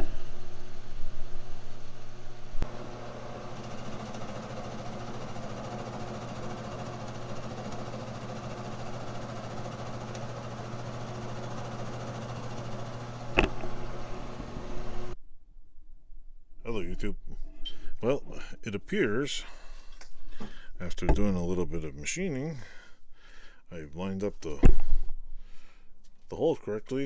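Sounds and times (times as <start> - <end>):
milling machine motor hum: 1.6 - 15.2.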